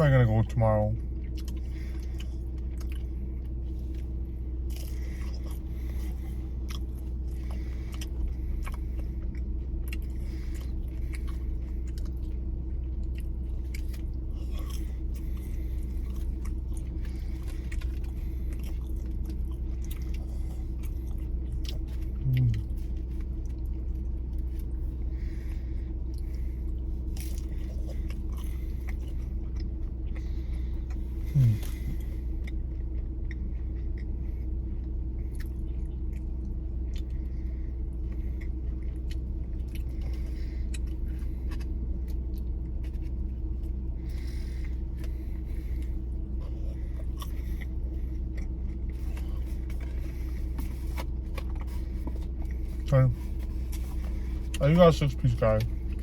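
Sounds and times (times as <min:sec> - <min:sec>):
low hum: 0:00.0 - 0:56.0
person chewing and crunching: 0:00.0 - 0:56.0
person humming: 0:22.2 - 0:22.7, 0:31.3 - 0:31.7.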